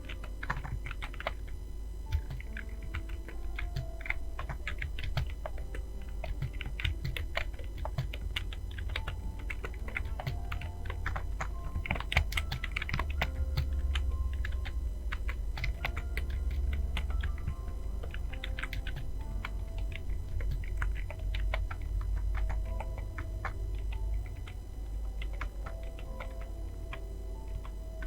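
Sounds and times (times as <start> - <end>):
rapid keyboard typing: 0.0 - 28.0
steady low hum: 0.0 - 28.0.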